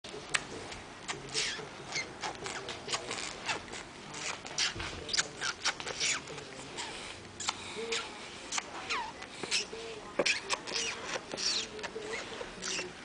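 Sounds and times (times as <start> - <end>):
child making squeaks: 7.4 - 12.9.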